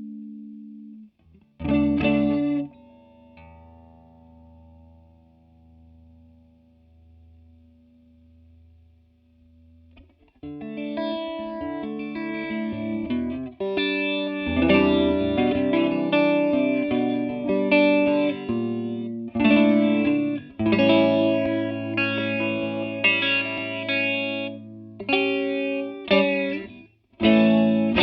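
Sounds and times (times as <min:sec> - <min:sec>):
electric guitar strumming chords: 0:10.0 - 0:28.0
faint tone: 0:14.5 - 0:16.2.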